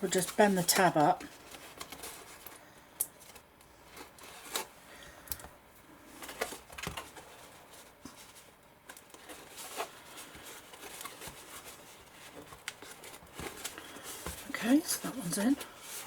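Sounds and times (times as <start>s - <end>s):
paper rustling: 6.0s - 16.0s.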